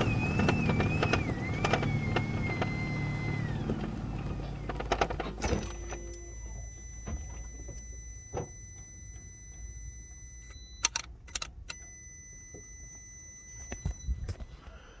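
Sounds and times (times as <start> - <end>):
sharp clicks: 0.0 - 6.2
high-pitched electric motor whine: 0.0 - 10.8.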